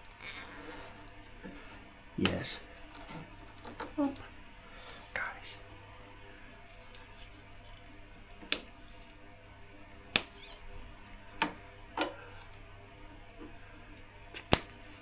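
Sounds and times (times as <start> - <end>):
faint steady hum: 0.0 - 15.0
sharp clicks of hand work: 8.4 - 8.8, 10.1 - 10.5, 14.4 - 14.8.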